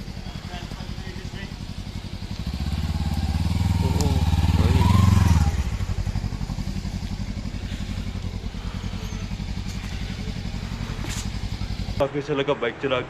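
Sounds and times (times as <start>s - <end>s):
motorcycle engine idling: 0.0s - 12.1s.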